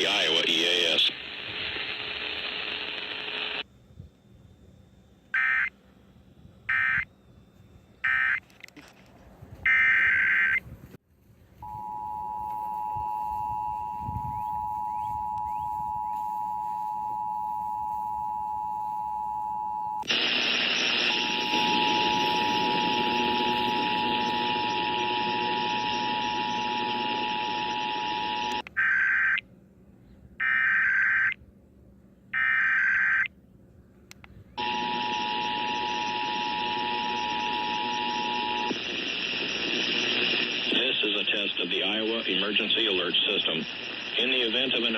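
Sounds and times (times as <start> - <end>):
radio static: 0.0 - 3.6, 12.4 - 18.2, 20.0 - 29.4, 34.6 - 44.9.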